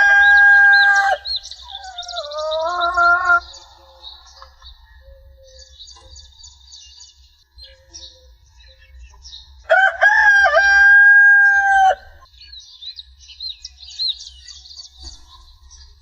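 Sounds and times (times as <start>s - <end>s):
rooster crowing: 0.0s - 4.9s, 9.7s - 12.3s
small birds chirping: 0.0s - 16.0s.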